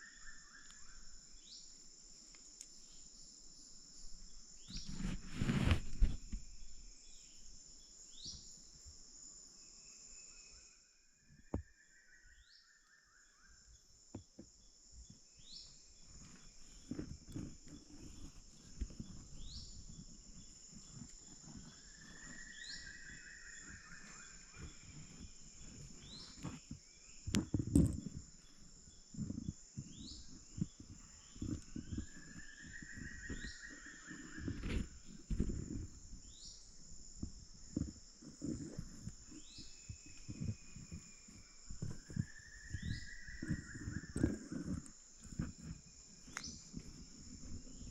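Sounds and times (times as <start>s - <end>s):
insects droning: 0.0s - 47.9s
rustling: 4.0s - 6.9s, 15.7s - 47.9s.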